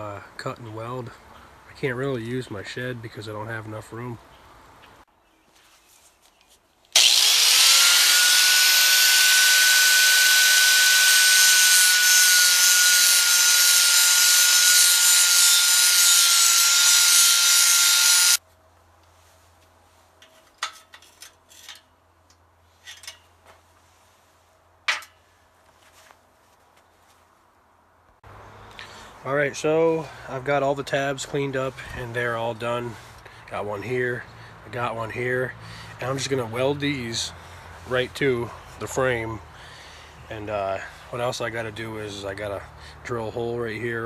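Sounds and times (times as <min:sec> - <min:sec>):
electric grinder grinding steel: 0:07.0 - 0:18.4.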